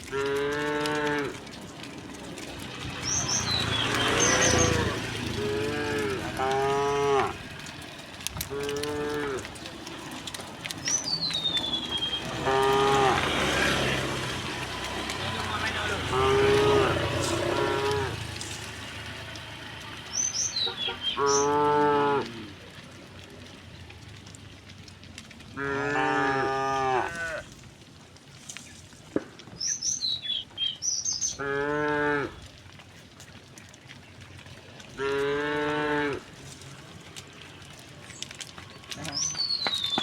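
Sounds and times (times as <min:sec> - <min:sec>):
cows mooing: 0:00.0 - 0:07.8, 0:08.4 - 0:19.7, 0:20.4 - 0:22.7, 0:25.5 - 0:27.4, 0:31.3 - 0:32.4, 0:34.9 - 0:36.6.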